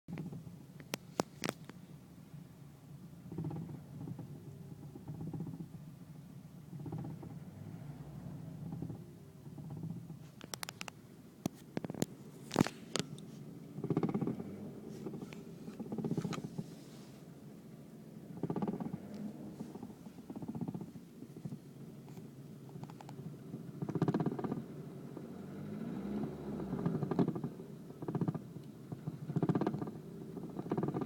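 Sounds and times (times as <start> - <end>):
low rumble: 1.7 - 24.0
sharp knocks and clicks: 3.3 - 5.8, 6.8 - 7.4, 8.6 - 13.2, 13.8 - 14.4, 18.4 - 23.2, 23.8 - 24.6, 26.9 - 31.0.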